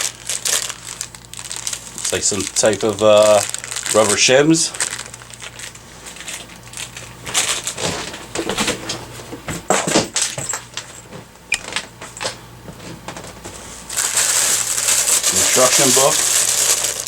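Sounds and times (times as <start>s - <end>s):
plastic packaging crinkling: 0.0s - 8.6s, 13.9s - 17.0s.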